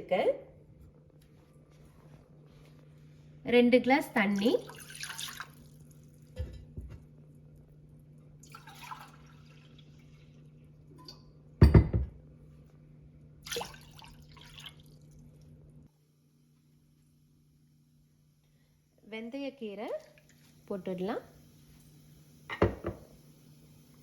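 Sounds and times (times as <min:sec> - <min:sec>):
water pouring into a pot: 0:04.0 - 0:06.4, 0:08.2 - 0:10.9, 0:13.4 - 0:15.6.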